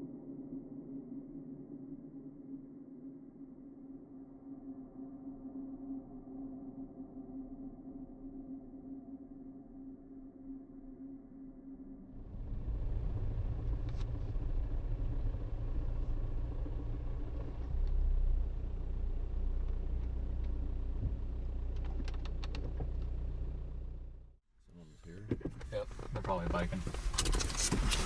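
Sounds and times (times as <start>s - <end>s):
motor vehicle rumbling: 12.1s - 28.0s.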